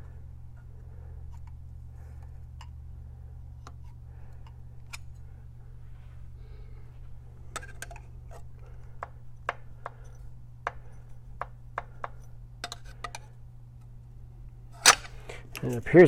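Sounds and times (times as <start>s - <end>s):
metal tools clicking on sprockets: 14.8s - 15.2s.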